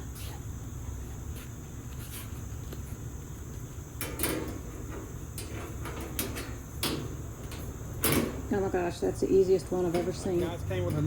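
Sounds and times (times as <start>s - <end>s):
metal grill parts clanking: 4.0s - 11.0s.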